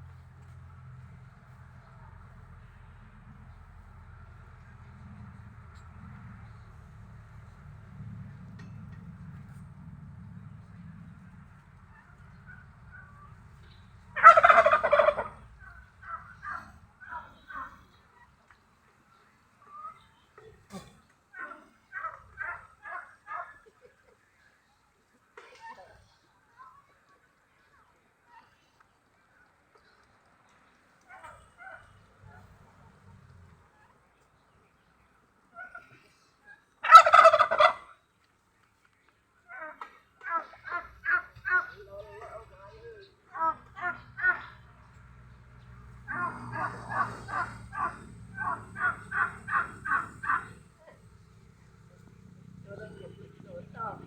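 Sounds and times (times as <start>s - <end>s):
turkey gobbling: 14.1s - 17.8s, 21.4s - 23.8s, 36.8s - 37.9s, 46.1s - 51.0s
fowl rattling call: 14.1s - 18.3s, 36.8s - 37.9s, 46.1s - 51.0s
faint short fowl calls: 35.5s - 37.9s.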